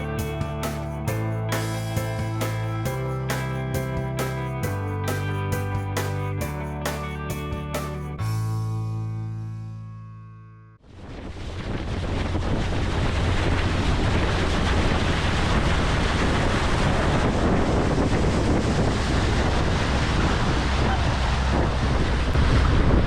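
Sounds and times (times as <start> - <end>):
low engine drone: 0.0 - 23.0
wind rushing over microphone: 10.8 - 23.0.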